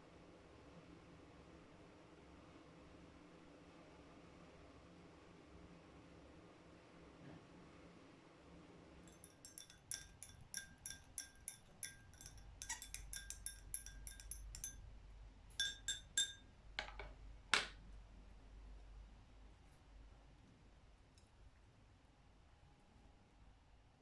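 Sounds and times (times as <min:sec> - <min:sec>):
light clinks on glass: 0:09.1 - 0:14.8, 0:15.6 - 0:17.0.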